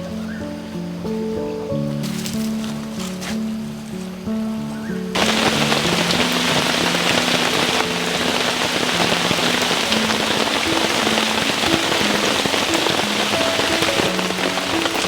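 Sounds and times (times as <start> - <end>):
soft music of held low notes: 0.0 - 15.0
heavy rain falling: 5.1 - 15.0.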